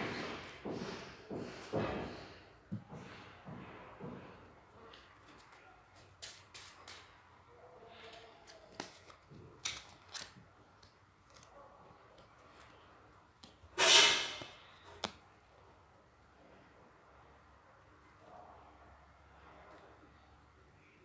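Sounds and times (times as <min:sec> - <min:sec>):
playing cards rustling: 0:05.2 - 0:07.3, 0:07.9 - 0:13.8.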